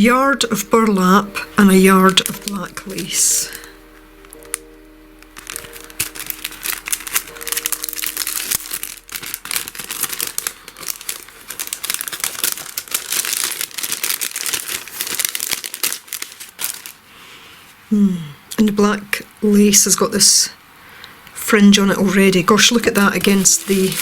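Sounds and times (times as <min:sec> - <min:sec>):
packaging crinkling: 0:00.5 - 0:17.1, 0:22.0 - 0:24.0.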